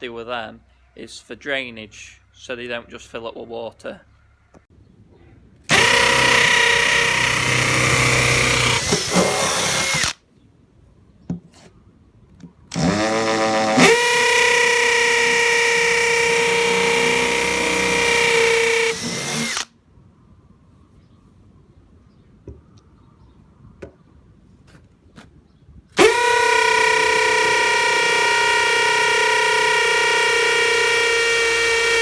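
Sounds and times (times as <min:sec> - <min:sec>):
power drill boring into plastic: 0:05.7 - 0:10.2, 0:12.7 - 0:19.7, 0:26.0 - 0:32.0.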